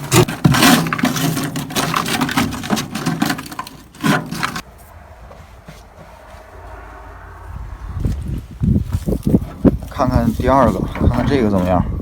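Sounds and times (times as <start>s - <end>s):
sheet-metal box clattering and scraping: 0.0s - 4.6s.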